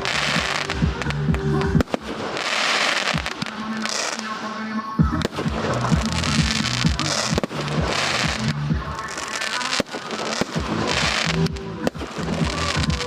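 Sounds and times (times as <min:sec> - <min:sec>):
loud music with bass line: 0:00.0 - 0:01.8, 0:05.0 - 0:09.2, 0:10.5 - 0:13.0
fireworks bangs and crackling: 0:00.0 - 0:13.0.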